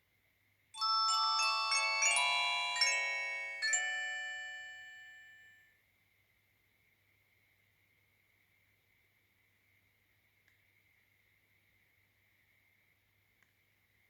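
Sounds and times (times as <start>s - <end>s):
phone power-off jingle: 0.8s - 5.4s.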